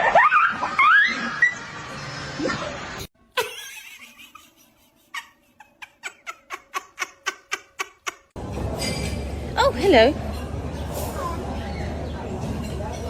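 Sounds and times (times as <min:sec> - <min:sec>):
rhythmic laughter: 0:03.4 - 0:08.4.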